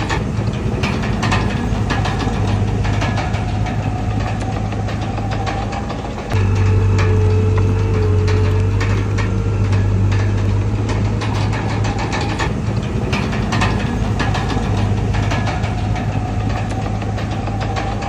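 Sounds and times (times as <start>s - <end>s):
bulldozer diesel engine humming: 0.0s - 18.0s
metallic knocks and clanks: 0.0s - 18.0s.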